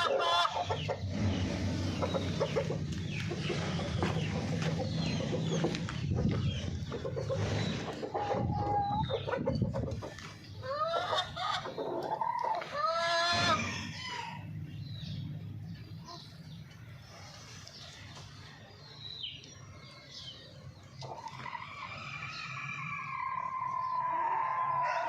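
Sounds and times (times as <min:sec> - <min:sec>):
chickens clucking and calling: 0:00.0 - 0:25.0
low background rumble: 0:00.7 - 0:10.6.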